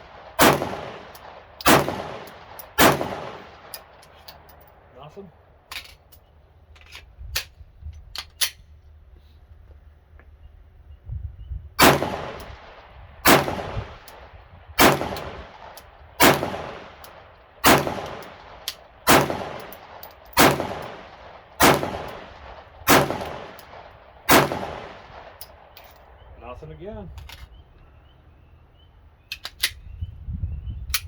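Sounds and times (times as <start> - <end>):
pistol shots: 0.0 - 4.0, 11.8 - 26.2.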